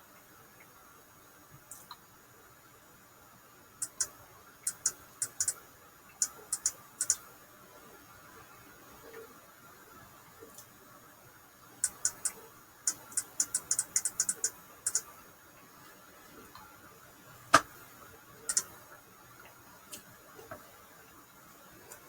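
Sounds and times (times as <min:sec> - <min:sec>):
computer mouse clicking: 0:03.8 - 0:05.6, 0:06.2 - 0:07.2, 0:11.8 - 0:15.1, 0:18.5 - 0:18.7.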